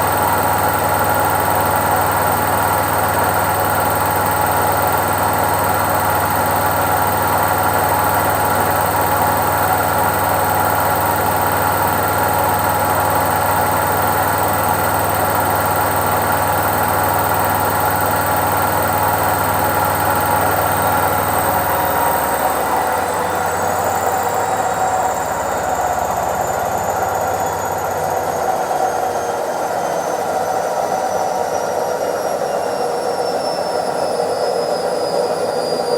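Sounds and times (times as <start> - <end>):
washing machine drum spinning: 0.0 - 28.7
motor whine: 0.0 - 35.9.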